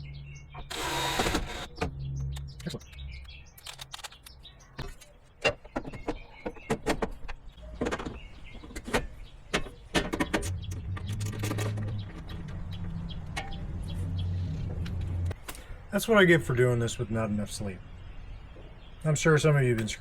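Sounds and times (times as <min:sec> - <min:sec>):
hard parts clicking and knocking: 0:03.5 - 0:13.9
low motor hum: 0:10.5 - 0:15.4.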